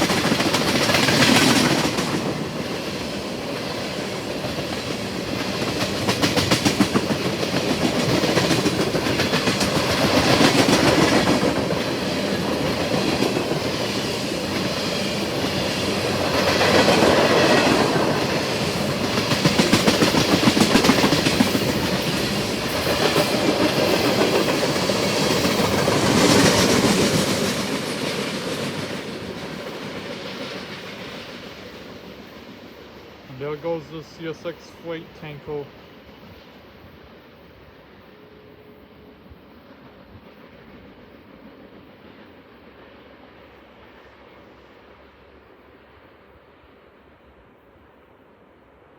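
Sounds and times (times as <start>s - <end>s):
train wheels clattering: 0.0s - 33.0s.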